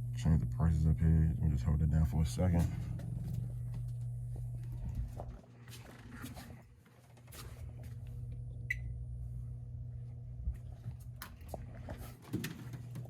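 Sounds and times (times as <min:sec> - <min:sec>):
machine humming: 0:00.0 - 0:13.0.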